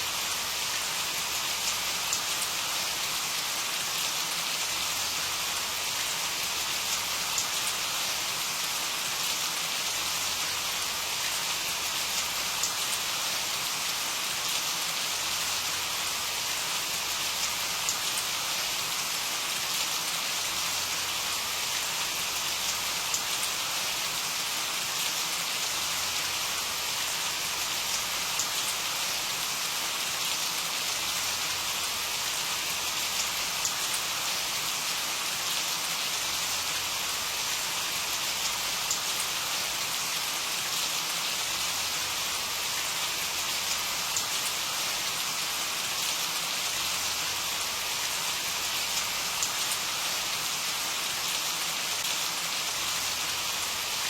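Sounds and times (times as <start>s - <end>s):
steady rain hiss: 0.0s - 54.0s
rain drop ticks: 22.7s - 23.4s, 33.2s - 34.2s, 43.6s - 44.6s, 48.8s - 49.9s.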